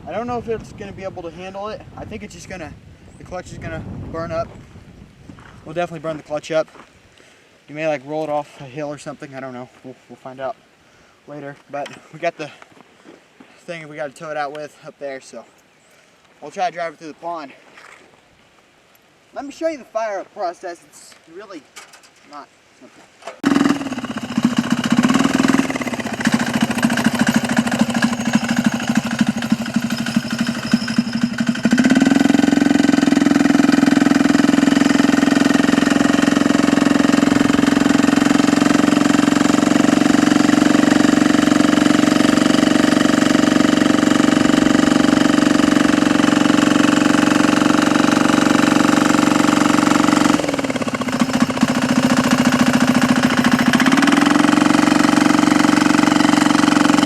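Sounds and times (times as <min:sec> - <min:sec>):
diesel engine running: 0:23.4 - 0:57.0.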